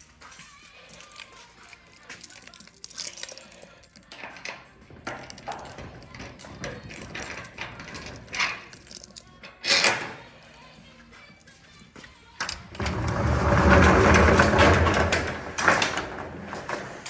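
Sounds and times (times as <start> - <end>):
loud clatter: 12.8 - 17.0.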